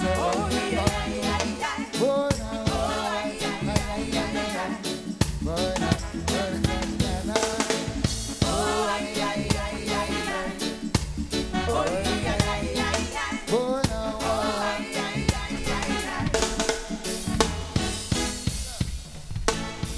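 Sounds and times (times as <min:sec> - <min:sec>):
reggae music: 0:00.0 - 0:19.9.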